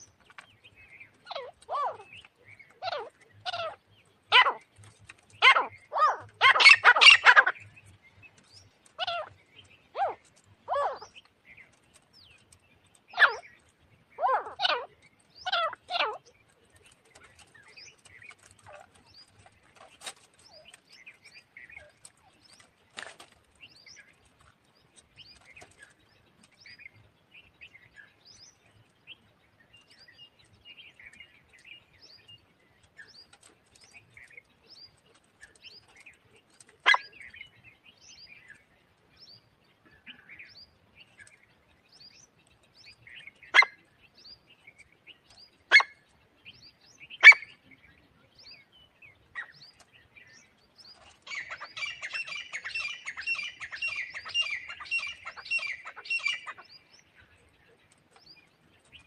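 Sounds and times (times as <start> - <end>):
small birds chirping: 0.0 - 59.0
partridge calling: 0.8 - 4.7, 5.3 - 7.9, 13.0 - 16.4, 36.7 - 37.5, 43.0 - 43.9, 45.5 - 46.0, 47.0 - 47.8, 51.2 - 57.5.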